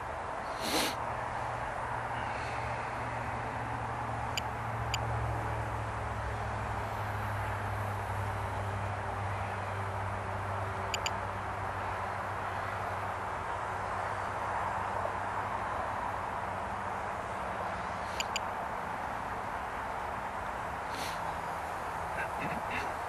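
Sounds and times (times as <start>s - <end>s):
high double chirps: 18.2s - 18.4s.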